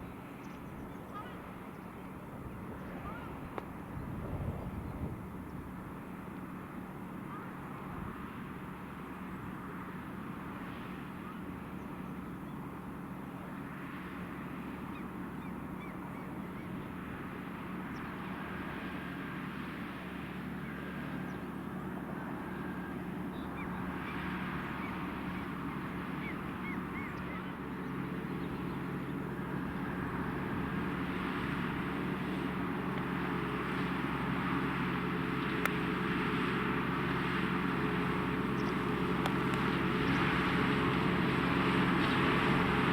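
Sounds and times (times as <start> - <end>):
gulls calling: 0.5 - 3.7, 14.6 - 17.0, 20.4 - 42.9
tractor diesel engine running: 4.8 - 42.9.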